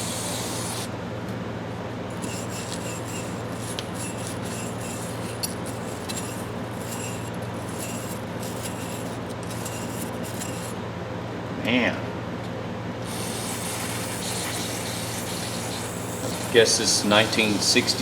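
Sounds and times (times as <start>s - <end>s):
steady low hum: 0.0s - 18.0s
metal scraping and rubbing: 2.1s - 10.8s, 13.0s - 18.0s.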